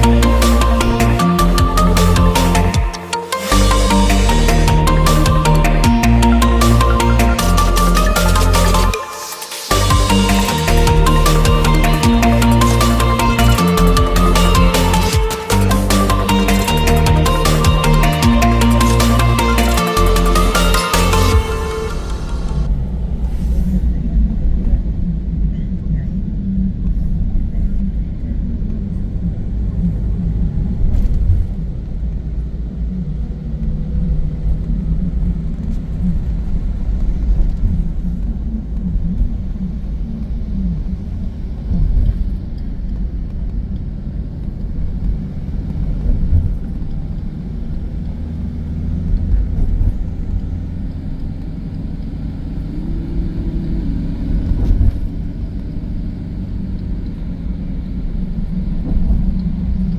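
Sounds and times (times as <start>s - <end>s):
car engine and road rumble: 0.0s - 9.0s, 9.6s - 59.9s.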